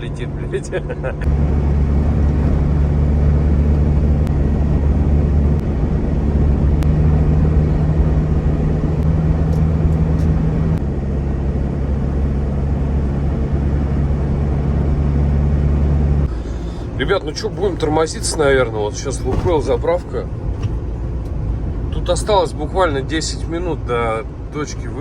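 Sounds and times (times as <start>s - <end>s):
low engine drone: 0.0s - 25.0s
road noise: 0.0s - 25.0s.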